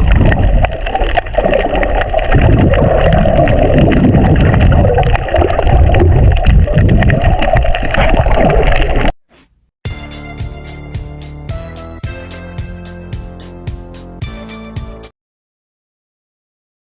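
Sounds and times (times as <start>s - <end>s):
underwater rumble of moving water: 0.0s - 9.1s.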